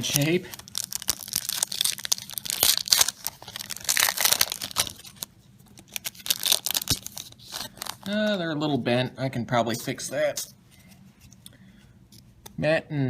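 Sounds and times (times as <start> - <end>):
wrapper tearing and crinkling: 0.0 - 8.2.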